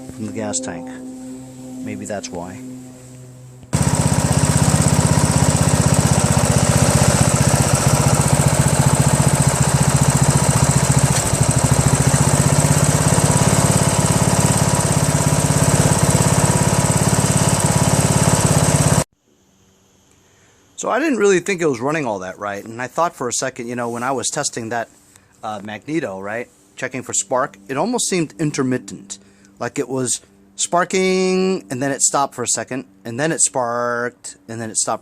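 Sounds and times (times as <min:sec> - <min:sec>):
lawn tractor engine running: 0:03.7 - 0:19.1.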